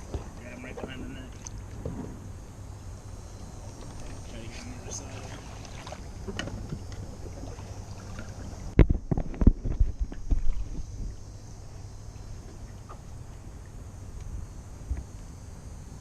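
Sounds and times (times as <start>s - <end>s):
knocks and thumps on a kayak: 0.0s - 2.2s, 4.9s - 11.2s
wind rumble on microphone: 0.0s - 11.7s.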